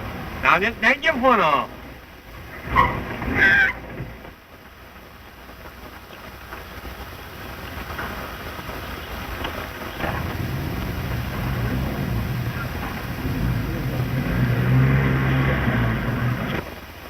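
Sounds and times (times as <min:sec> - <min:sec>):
film soundtrack hiss: 0:00.0 - 0:17.0
low hum: 0:09.0 - 0:16.8
car engine running: 0:09.2 - 0:17.0.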